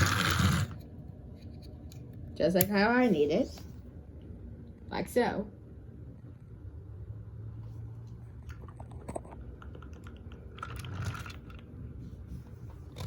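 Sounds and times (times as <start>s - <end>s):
toy trains clicking and tapping: 0.0s - 0.7s.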